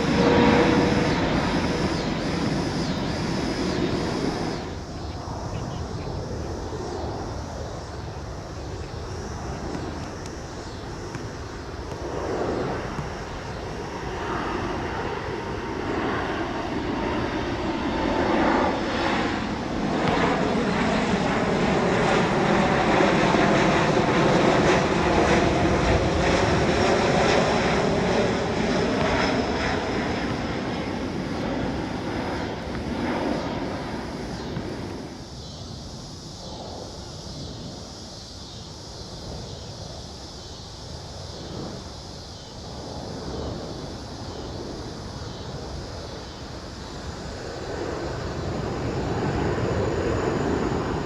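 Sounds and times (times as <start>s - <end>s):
jet airliner engines passing: 0.0s - 51.0s.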